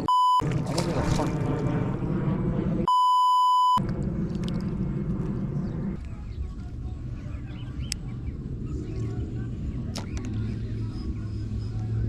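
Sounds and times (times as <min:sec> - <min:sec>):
censor bleep: 0:00.0 - 0:00.4, 0:02.9 - 0:03.8
low outdoor rumble: 0:00.0 - 0:02.9, 0:03.7 - 0:12.0.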